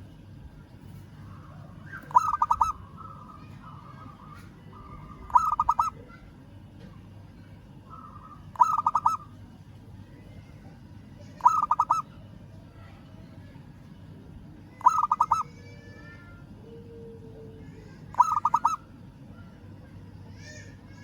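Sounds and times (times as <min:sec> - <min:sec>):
dove cooing: 0:01.3 - 0:06.1, 0:07.9 - 0:09.3, 0:11.4 - 0:12.0, 0:14.8 - 0:15.5, 0:18.1 - 0:18.8.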